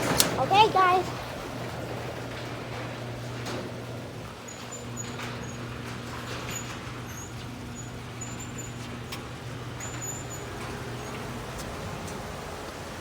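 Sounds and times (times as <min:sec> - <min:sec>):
garage door opener humming: 0:00.0 - 0:13.0
high squeaks: 0:09.8 - 0:12.3.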